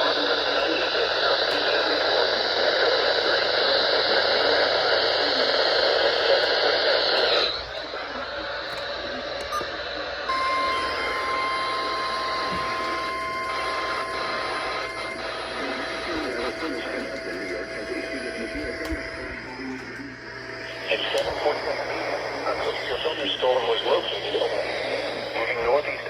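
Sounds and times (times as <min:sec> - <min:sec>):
radio static hiss: 0:00.0 - 0:26.0
steady single-pitch alert tone: 0:10.3 - 0:26.0.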